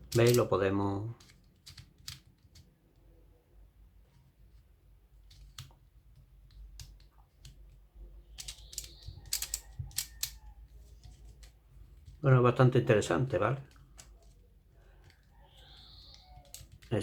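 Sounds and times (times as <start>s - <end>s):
plastic puzzle clicks: 0.0s - 0.5s, 1.2s - 2.7s, 5.2s - 10.4s, 16.1s - 17.0s.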